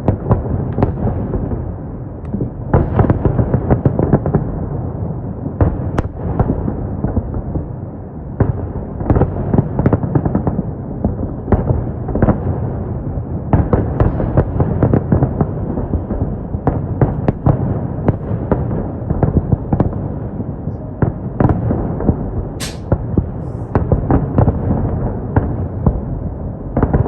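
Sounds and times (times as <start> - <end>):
fireworks rumble and crackle: 0.0 - 27.0
fireworks bangs: 22.6 - 23.2.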